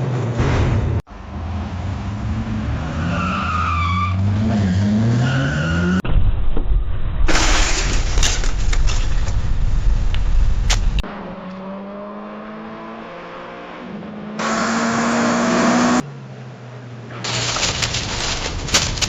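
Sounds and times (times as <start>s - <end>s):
tyres skidding: 0.0s - 6.0s, 10.8s - 19.0s
car crash: 0.2s - 1.0s, 6.0s - 9.4s, 17.2s - 19.0s.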